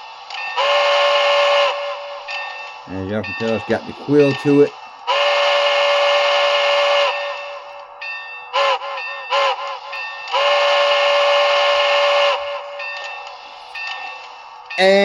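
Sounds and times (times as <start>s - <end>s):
model train steam whistle: 0.6s - 2.3s, 5.1s - 7.8s, 8.6s - 12.8s.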